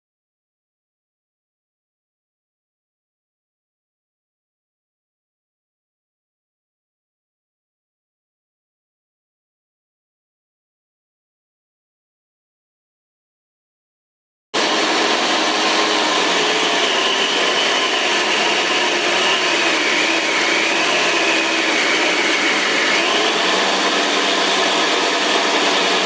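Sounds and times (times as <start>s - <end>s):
belt sander whirring: 14.6s - 26.0s.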